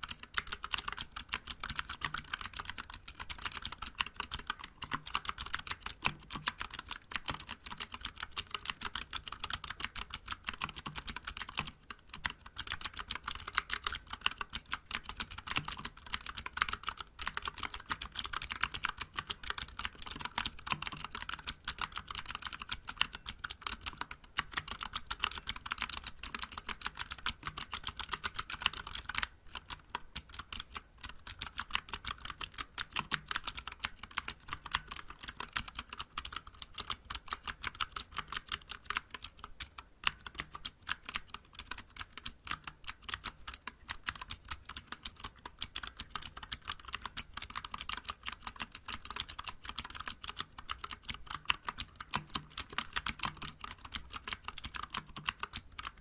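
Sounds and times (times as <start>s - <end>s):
mechanical keyboard typing: 0.0s - 56.0s.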